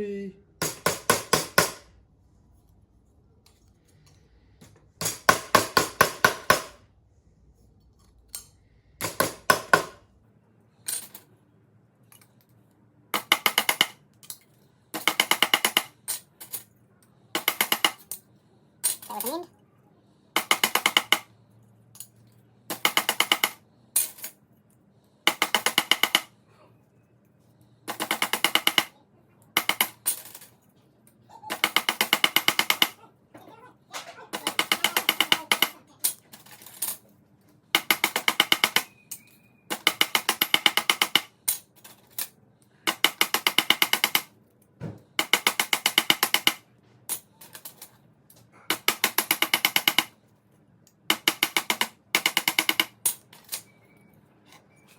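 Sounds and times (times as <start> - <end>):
hammer tapping metal strips: 0.6 - 1.9, 4.6 - 6.8, 8.3 - 10.0, 13.2 - 14.4, 15.0 - 16.5, 17.4 - 18.2, 20.4 - 21.3, 22.7 - 24.2, 25.3 - 26.3, 27.9 - 28.9, 31.6 - 33.0, 34.0 - 36.6, 37.7 - 41.6, 42.9 - 44.3, 45.1 - 47.8, 48.7 - 50.1, 51.1 - 53.5.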